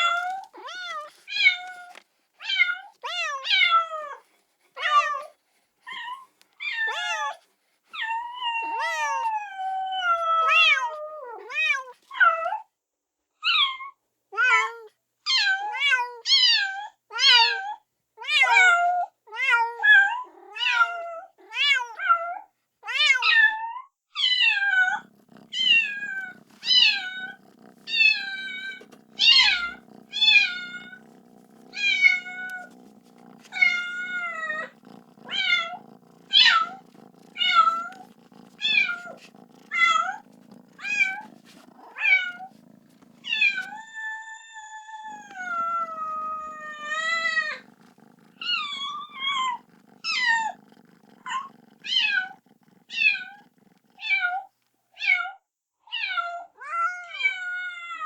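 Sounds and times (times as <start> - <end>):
kitten meowing: 24.2 - 50.6.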